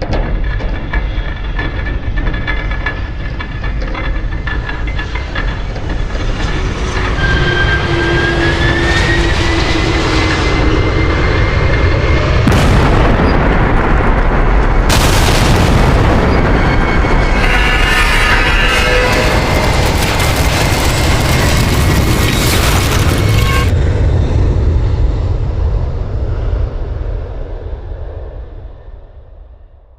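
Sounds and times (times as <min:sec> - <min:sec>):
loud rumbling noise: 0:00.0 - 0:29.3
rising whine: 0:06.6 - 0:24.1
harsh loud roar: 0:12.5 - 0:23.7.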